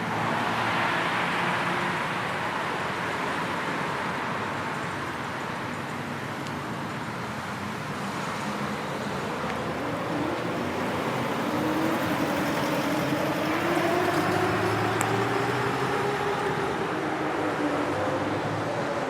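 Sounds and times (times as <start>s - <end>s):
road traffic noise: 0.0s - 19.0s
vehicle engine accelerating: 9.2s - 19.0s.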